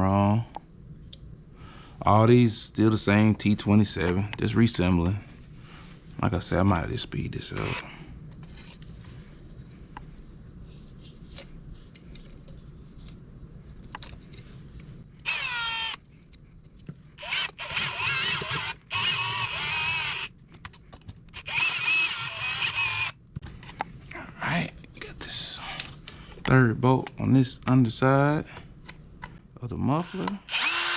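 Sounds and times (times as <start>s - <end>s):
cordless drill driving screws: 15.3s - 16.0s, 17.2s - 20.3s, 21.4s - 23.1s, 30.0s - 30.9s.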